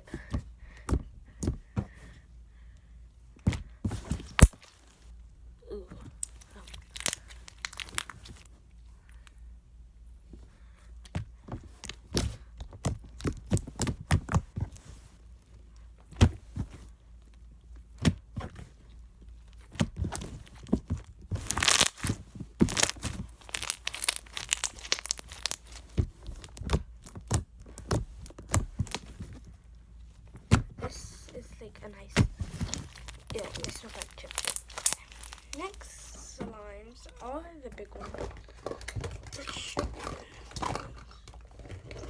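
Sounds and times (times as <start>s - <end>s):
slime squeezed by hand: 6.1s - 8.5s, 21.4s - 26.0s, 32.2s - 36.4s.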